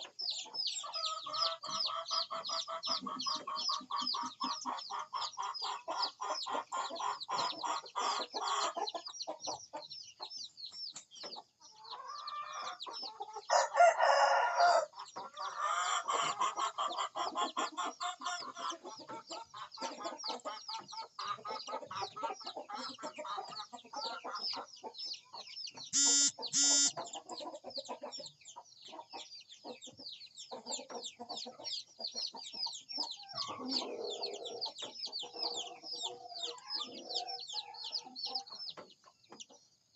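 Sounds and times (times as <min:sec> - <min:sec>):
chickens clucking: 0:00.0 - 0:39.9
rooster crowing: 0:13.5 - 0:14.9, 0:26.0 - 0:26.9
high rapid chirping: 0:26.0 - 0:26.9
loud pitched calls: 0:26.0 - 0:27.0.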